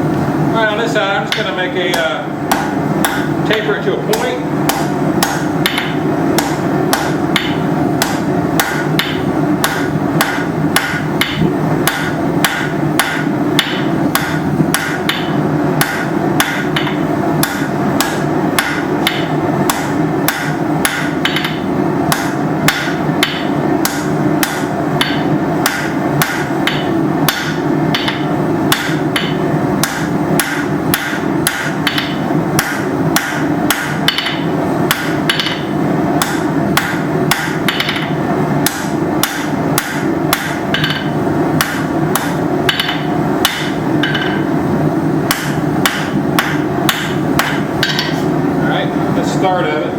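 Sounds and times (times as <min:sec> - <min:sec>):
hammer striking steel on anvil: 0:01.3 - 0:44.5, 0:45.3 - 0:48.2.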